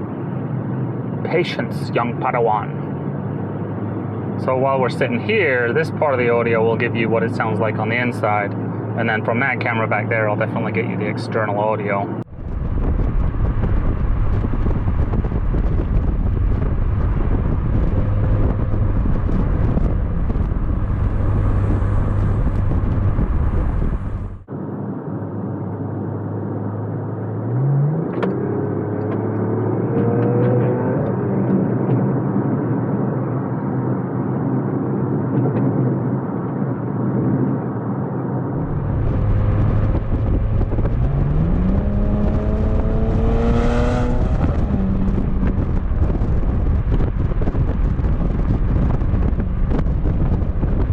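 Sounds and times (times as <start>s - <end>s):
road noise: 0.0s - 50.9s
car engine accelerating: 12.1s - 24.5s, 27.0s - 32.8s, 38.4s - 50.9s.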